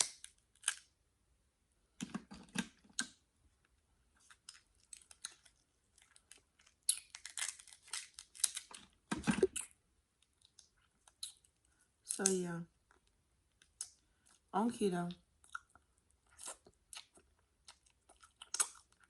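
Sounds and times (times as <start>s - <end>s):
shells cracking and crackling: 6.2s - 8.8s.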